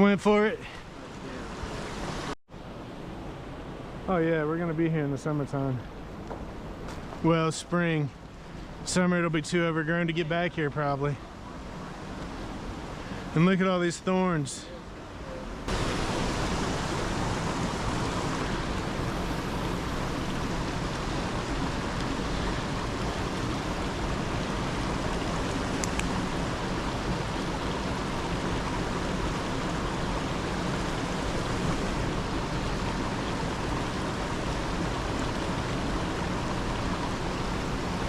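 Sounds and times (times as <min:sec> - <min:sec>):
waterfall rushing: 0:15.3 - 0:38.0
small click: 0:25.8 - 0:26.2.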